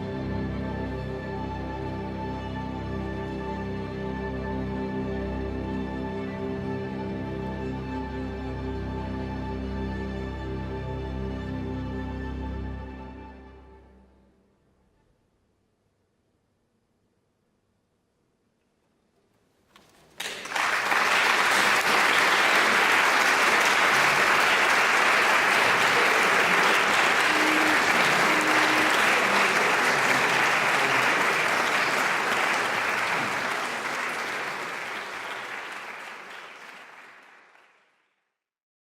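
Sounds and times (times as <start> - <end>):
audience applauding: 20.2 - 38.0.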